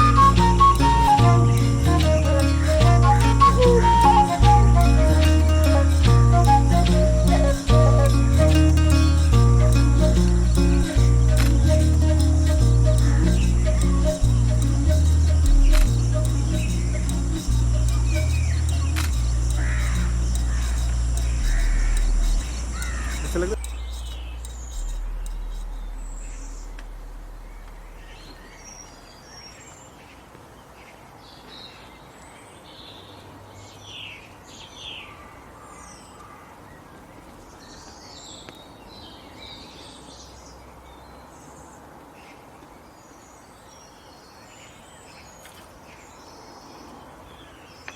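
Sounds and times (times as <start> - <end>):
low rumble: 0.0 - 29.0
birds chirping and trilling: 0.0 - 30.2
outdoor ambience hiss: 0.0 - 47.9.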